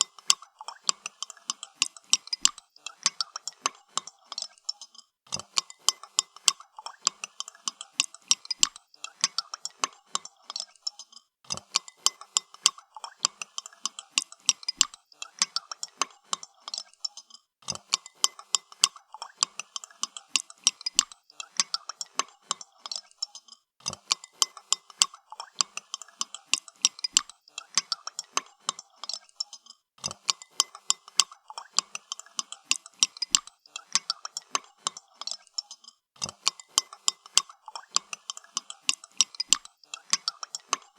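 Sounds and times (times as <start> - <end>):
spoon clinking in a cup: 16.7 - 40.9.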